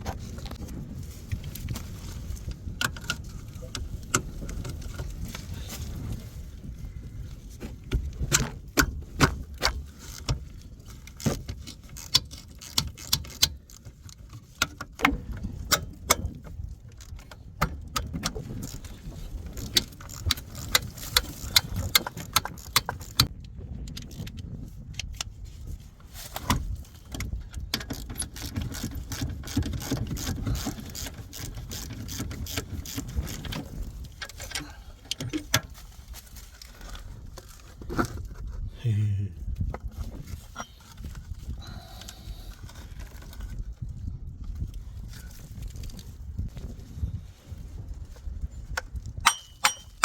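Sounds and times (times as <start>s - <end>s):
low steady rumble: 38.7s - 39.8s
metal tools clinking: 49.2s - 50.0s.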